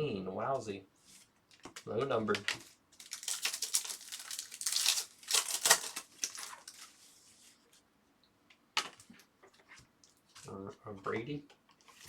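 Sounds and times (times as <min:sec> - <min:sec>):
trading cards rustling: 0:01.7 - 0:07.2.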